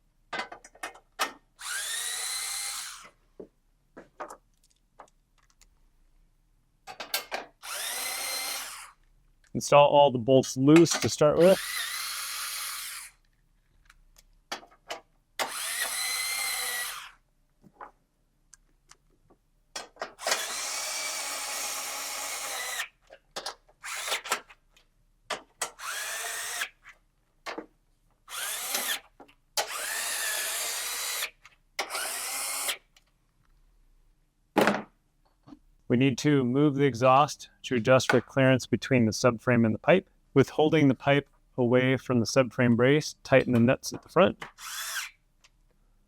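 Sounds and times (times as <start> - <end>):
power driver motor whine: 7.6 - 8.8.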